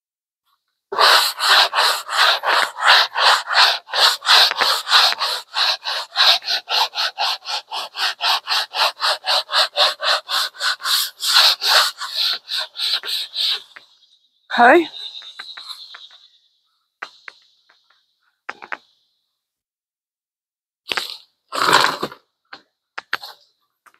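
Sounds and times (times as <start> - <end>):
hand sanding wood: 0.9 - 13.9.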